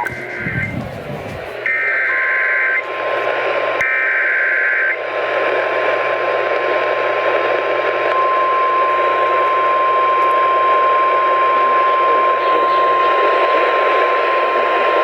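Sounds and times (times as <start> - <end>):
data header tones: 0.0 - 1.0
steady warning alarm tone: 0.0 - 3.2, 8.1 - 15.0
radio static and hiss: 0.0 - 15.0.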